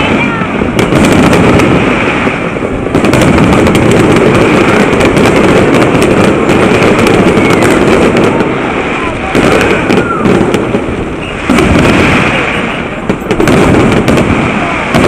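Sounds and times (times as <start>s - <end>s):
fireworks bangs and crackles: 0.0s - 15.0s.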